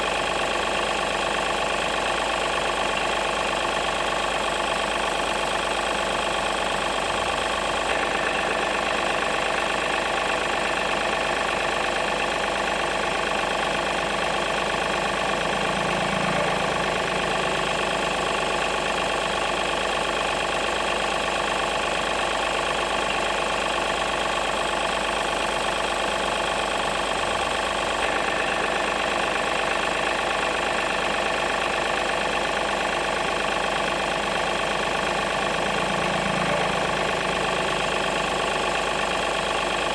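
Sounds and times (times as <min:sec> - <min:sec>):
remote-control toy truck humming: 0:34.6 - 0:37.8.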